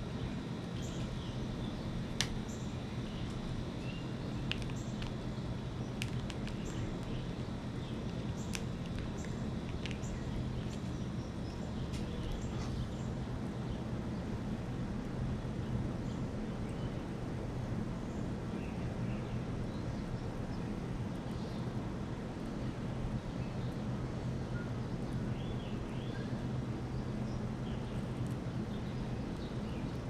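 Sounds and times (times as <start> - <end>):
low background rumble: 0.0 - 30.0
sharp clicks: 4.4 - 5.2.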